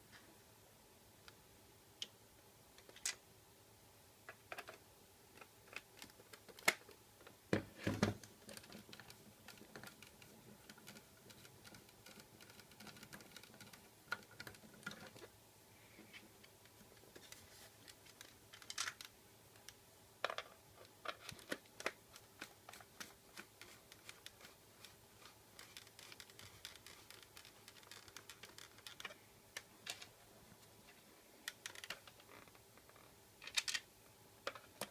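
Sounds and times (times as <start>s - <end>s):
small parts clicking and tapping: 4.3s - 7.4s, 8.2s - 15.3s, 16.0s - 30.1s, 31.4s - 34.9s.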